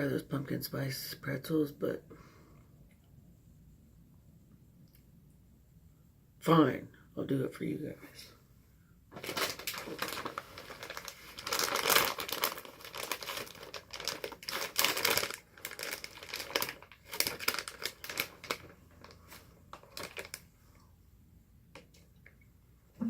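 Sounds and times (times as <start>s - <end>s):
plastic packaging crinkling: 9.1s - 20.5s.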